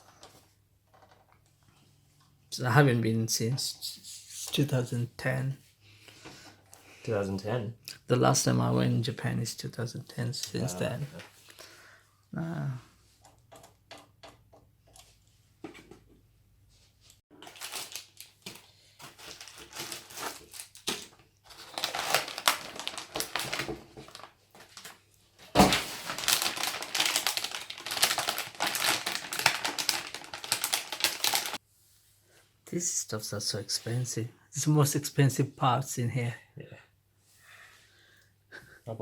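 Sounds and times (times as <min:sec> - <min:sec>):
computer parts clicking and rattling: 0:13.2 - 0:15.2.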